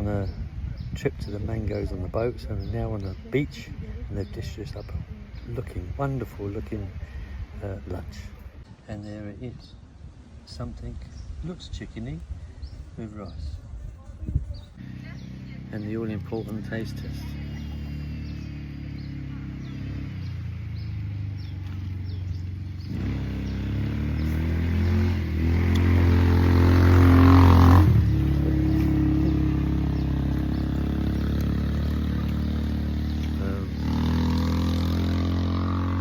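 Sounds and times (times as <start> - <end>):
engine revving: 14.8 - 36.0.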